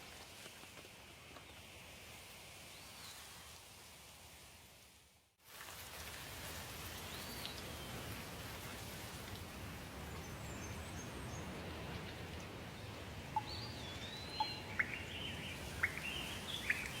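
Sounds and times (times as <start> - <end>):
steady rain: 0.0 - 17.0
bird sharp chirps and whistles: 13.4 - 15.1
birds chirping: 13.4 - 17.0.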